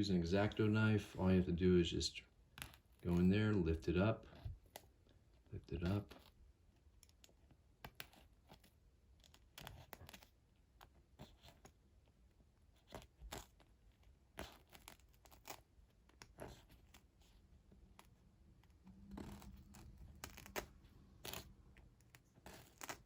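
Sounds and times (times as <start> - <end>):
knife scratching velcro: 12.8 - 13.7, 14.3 - 17.1, 19.1 - 23.0.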